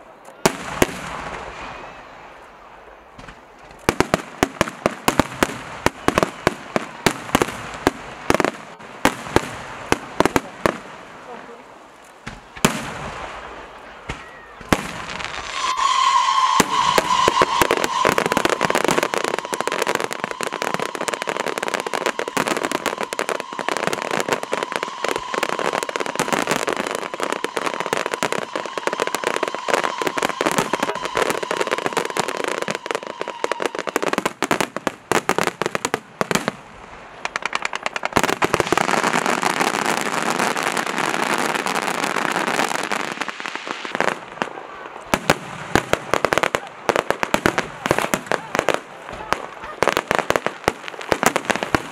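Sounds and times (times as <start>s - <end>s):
fireworks crackling and popping: 0.0s - 51.9s
high whistle-like tone: 1.5s - 2.5s, 15.4s - 34.0s.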